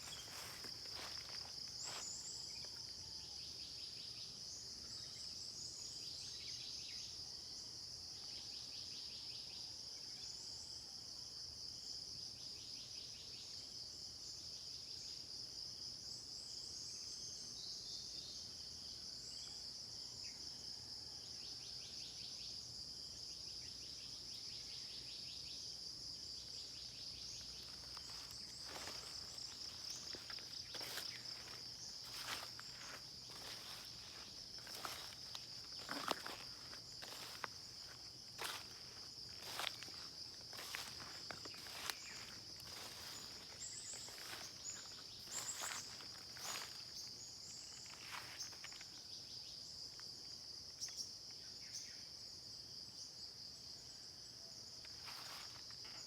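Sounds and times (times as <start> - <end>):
crickets and insects chirping: 0.0 - 56.0
pulsing insect trills: 24.8 - 52.1.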